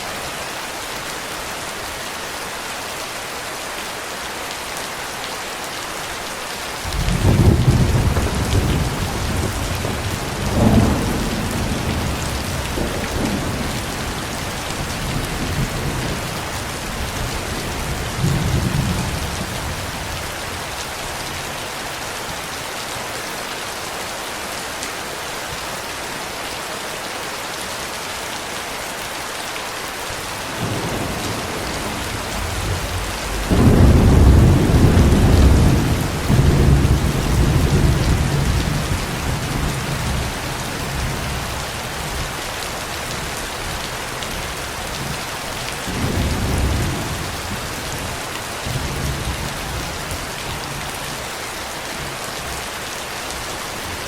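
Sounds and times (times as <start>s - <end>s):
steady rain falling: 0.0s - 54.0s
thunder rumbling: 6.9s - 20.4s, 30.4s - 42.2s, 45.9s - 49.8s.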